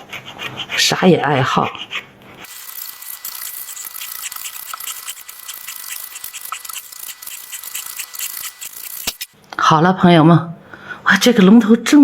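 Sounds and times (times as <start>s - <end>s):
tool scratching gourd rind: 0.0s - 9.4s.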